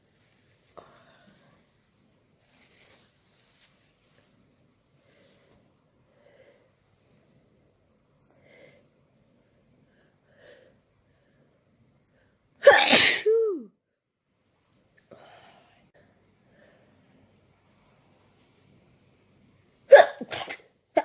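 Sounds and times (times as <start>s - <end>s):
person sneezing: 12.6s - 13.6s, 19.9s - 20.7s.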